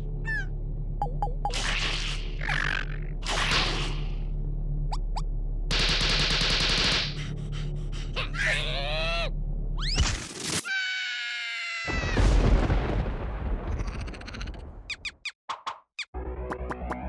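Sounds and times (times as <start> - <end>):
high held scream: 10.6 - 12.2
loud low rumbling crash: 12.1 - 13.9.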